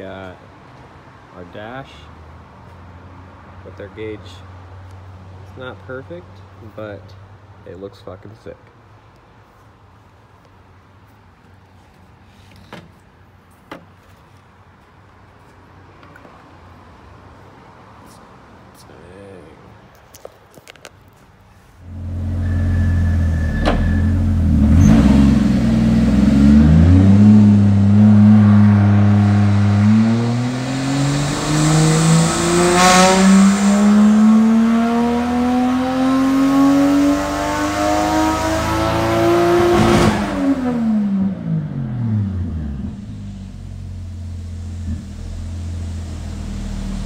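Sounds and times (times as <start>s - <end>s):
car engine accelerating: 21.8s - 47.0s.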